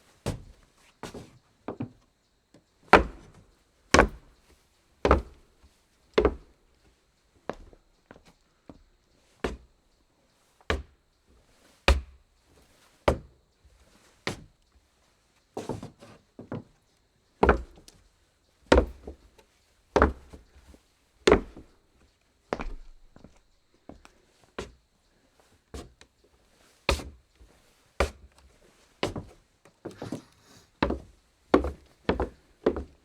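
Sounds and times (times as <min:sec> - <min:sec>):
footsteps on wooden floor: 0:21.3 - 0:21.7, 0:22.5 - 0:24.0, 0:29.0 - 0:33.0.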